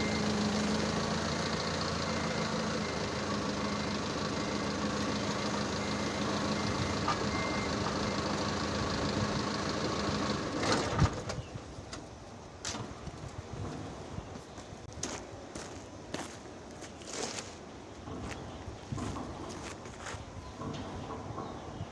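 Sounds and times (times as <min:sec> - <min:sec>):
faint high beeping: 0:00.0 - 0:08.4
engine running: 0:00.0 - 0:14.7, 0:17.9 - 0:21.9.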